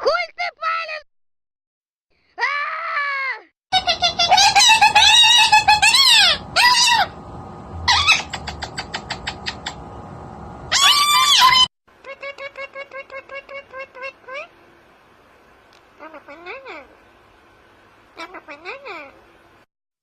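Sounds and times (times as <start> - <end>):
parrot squawking: 3.8 - 7.2, 7.8 - 9.8, 10.7 - 14.5.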